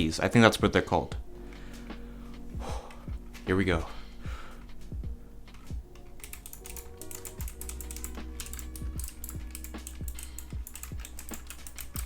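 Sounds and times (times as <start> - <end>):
mechanical keyboard keys clicking: 5.5 - 12.0.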